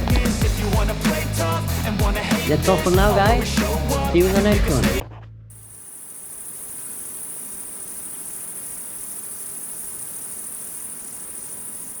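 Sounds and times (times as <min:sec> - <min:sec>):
music: 0:00.0 - 0:05.2
crickets chirping: 0:05.5 - 0:12.0.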